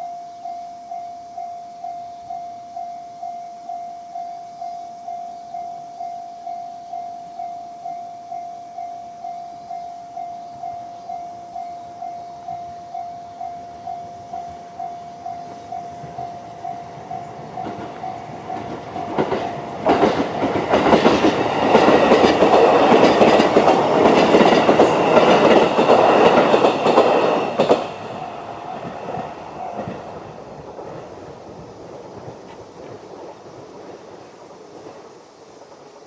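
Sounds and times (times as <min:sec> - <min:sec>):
level-crossing warning bell: 0:00.0 - 0:31.1
electric train passing: 0:00.0 - 0:36.0
wheels clattering over rail joints: 0:14.8 - 0:35.1.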